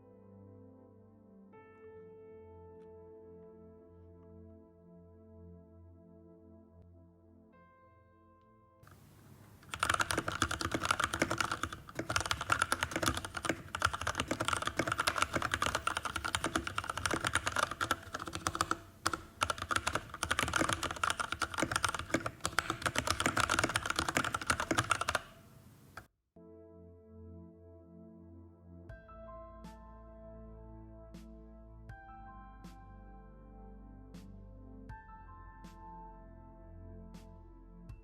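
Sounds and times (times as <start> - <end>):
mechanical keyboard typing: 8.9 - 26.1.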